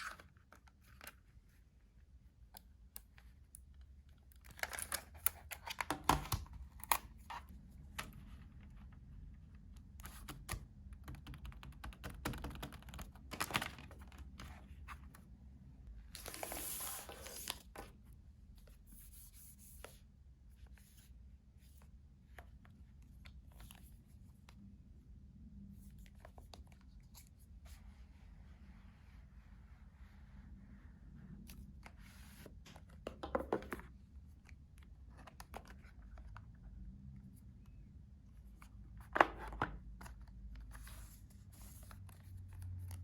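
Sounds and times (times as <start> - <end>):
packaging clicks and rustles: 12.2 - 14.4.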